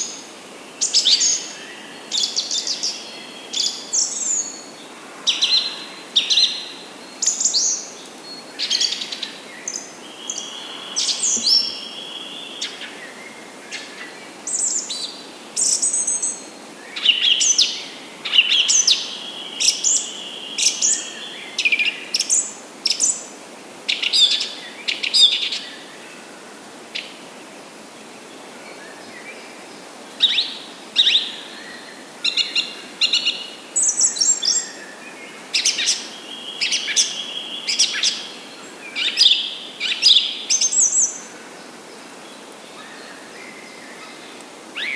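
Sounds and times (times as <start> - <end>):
faint steady hiss: 0.0 - 44.9
birds chirping: 7.2 - 13.0.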